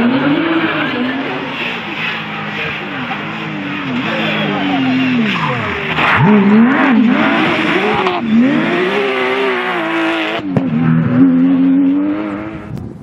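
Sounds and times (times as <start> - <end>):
rally car engines revving: 0.0 - 13.0.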